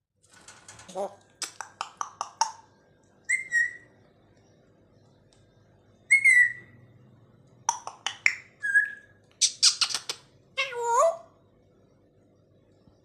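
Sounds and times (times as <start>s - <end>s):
parrot clicking calls: 1.4s - 2.6s, 7.7s - 8.5s, 9.4s - 10.3s
parrot whistling: 3.3s - 3.8s, 6.1s - 6.7s, 8.3s - 9.1s
parrot squawking: 8.2s - 11.3s.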